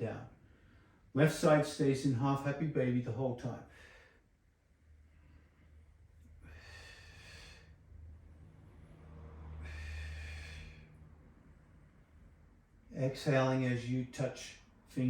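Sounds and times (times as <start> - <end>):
steady low hum: 0.0 - 15.0
person breathing: 0.4 - 1.1, 3.7 - 4.3, 6.3 - 8.0, 9.4 - 11.3.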